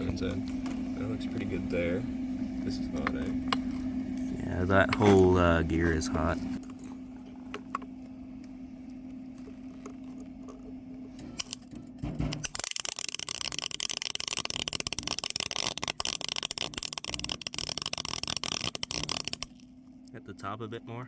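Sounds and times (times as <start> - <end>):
low steady hum: 0.0 - 21.0
welding arc crackling: 12.4 - 19.7.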